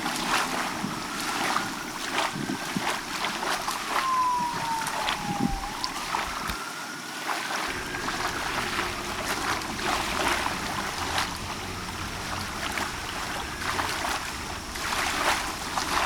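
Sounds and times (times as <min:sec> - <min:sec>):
small waves lapping and splashing: 0:00.0 - 0:16.0.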